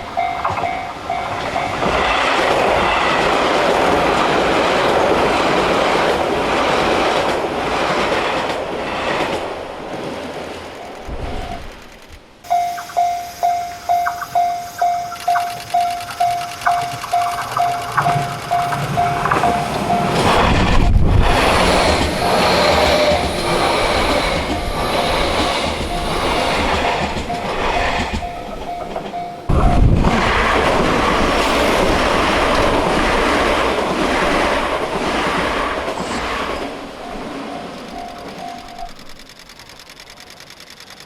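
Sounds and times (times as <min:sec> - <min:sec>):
level crossing bell ringing: 0:00.0 - 0:02.1, 0:12.5 - 0:20.5, 0:27.2 - 0:29.9
train wheels clattering on rails: 0:00.0 - 0:41.0.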